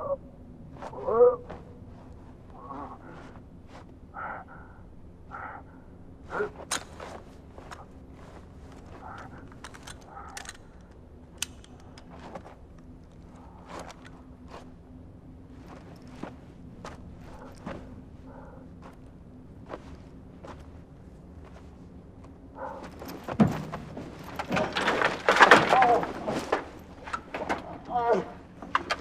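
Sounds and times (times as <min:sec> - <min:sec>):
faint low hum: 0:00.0 - 0:29.0
footsteps and scuffs: 0:11.7 - 0:24.4.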